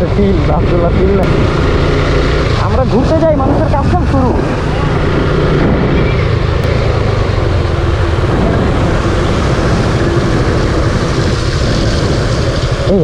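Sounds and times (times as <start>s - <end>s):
motorcycle engine running: 0.0s - 13.0s.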